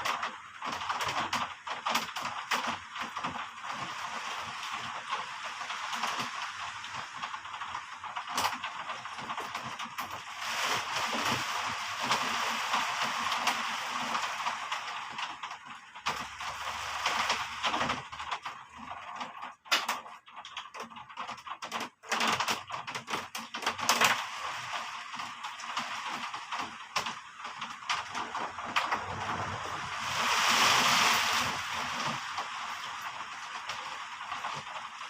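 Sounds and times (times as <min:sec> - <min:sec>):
heavy rain hissing: 0:10.2 - 0:15.4, 0:16.2 - 0:17.9, 0:28.2 - 0:35.0.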